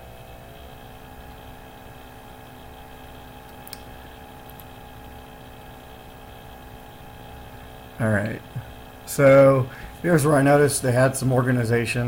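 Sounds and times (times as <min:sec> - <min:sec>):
electrical mains hum: 0:00.0 - 0:12.0
computer mouse click: 0:03.5 - 0:03.9.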